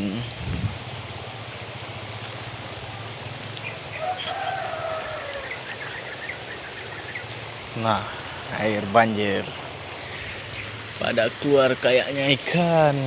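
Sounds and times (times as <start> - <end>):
rain hissing: 0.0 - 13.0
rooster crowing: 3.9 - 6.3.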